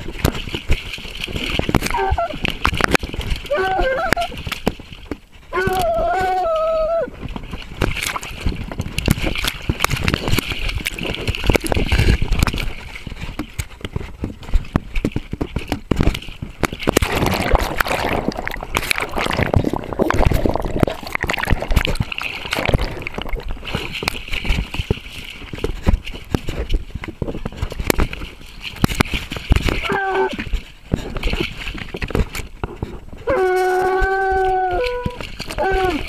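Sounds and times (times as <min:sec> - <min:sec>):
knocks and scrapes: 0:00.0 - 0:36.0
dog splashing through water: 0:15.6 - 0:26.8.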